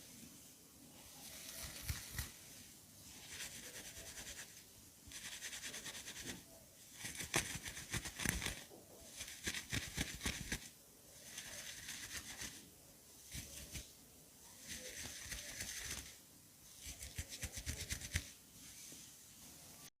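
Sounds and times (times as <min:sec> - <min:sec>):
hairbrush strokes through hair: 0:00.0 - 0:12.6, 0:16.8 - 0:19.5.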